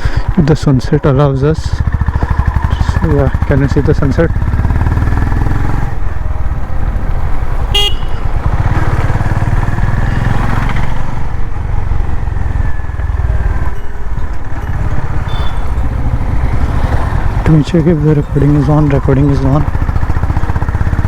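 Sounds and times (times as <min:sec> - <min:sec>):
motorcycle engine running: 0:00.0 - 0:21.0
vehicle horn toot: 0:07.7 - 0:08.4, 0:15.2 - 0:15.8.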